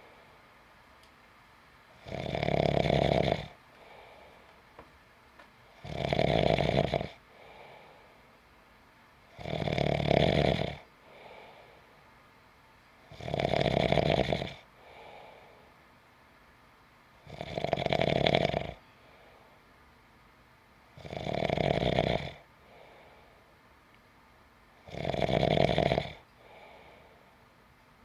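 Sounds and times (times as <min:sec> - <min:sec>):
person snoring loudly: 0:02.0 - 0:03.6, 0:05.8 - 0:07.2, 0:09.4 - 0:10.8, 0:13.1 - 0:14.6, 0:17.3 - 0:18.8, 0:21.0 - 0:22.4, 0:24.9 - 0:26.2
faint breath: 0:03.7 - 0:04.7, 0:07.3 - 0:08.4, 0:11.0 - 0:12.2, 0:14.8 - 0:15.9, 0:18.8 - 0:19.8, 0:22.6 - 0:23.6, 0:26.3 - 0:27.6.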